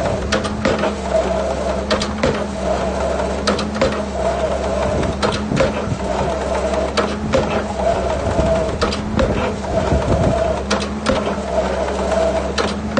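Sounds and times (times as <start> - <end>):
sharp pile driving knocks: 0.0 - 1.1, 1.8 - 2.6, 3.4 - 4.2, 4.9 - 11.4
excavator engine running: 0.0 - 12.9.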